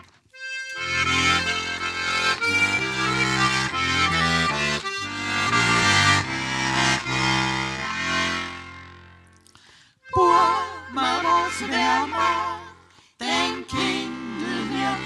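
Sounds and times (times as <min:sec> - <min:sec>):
accordion folk music: 0:00.0 - 0:15.0.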